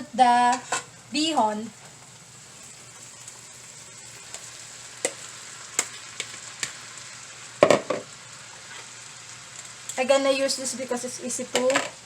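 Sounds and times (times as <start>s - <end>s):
food sizzling in oil: 0.0s - 12.0s
utensil tapping pot: 5.0s - 6.8s.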